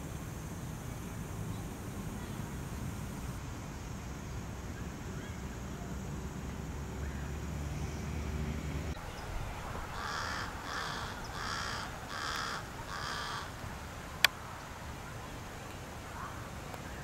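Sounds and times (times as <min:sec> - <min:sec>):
crow calling harshly: 0:09.9 - 0:13.5.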